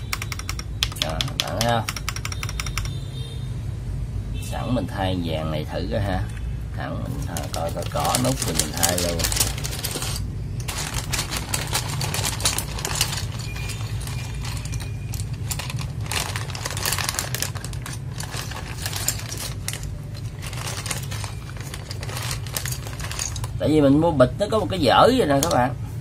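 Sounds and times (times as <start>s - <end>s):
plastic keycaps clicking and rattling: 0.0s - 3.0s, 7.2s - 23.6s
plastic bag crinkling: 7.1s - 23.7s.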